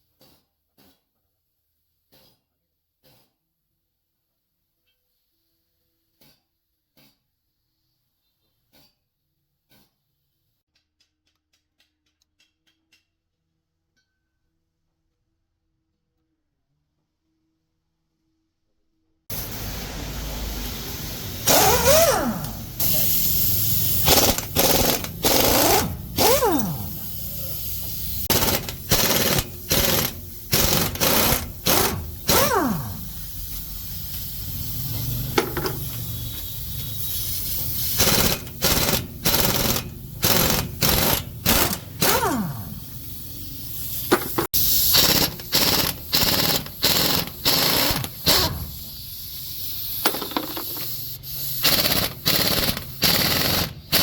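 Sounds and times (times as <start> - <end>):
impact wrench hammering: 21.4 - 49.0, 50.0 - 51.0, 51.6 - 54.0.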